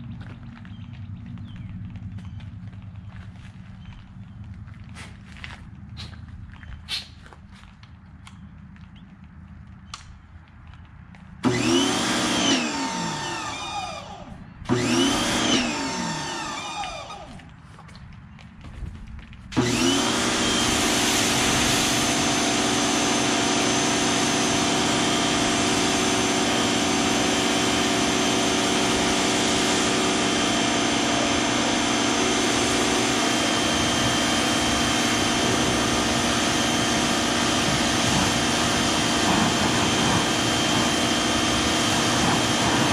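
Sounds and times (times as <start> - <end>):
pressure washer motor whining: 11.4 - 17.5, 19.5 - 42.9.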